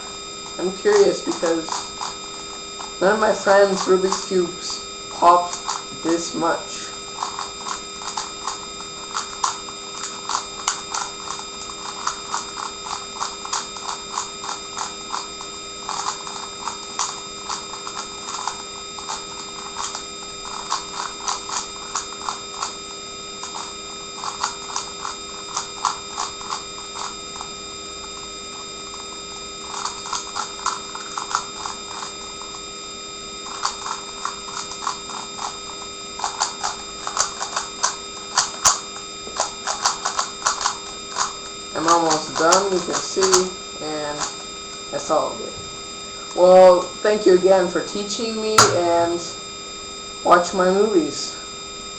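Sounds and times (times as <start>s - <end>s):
plastic puzzle cube clicking: 36.2s - 38.8s, 39.4s - 41.3s.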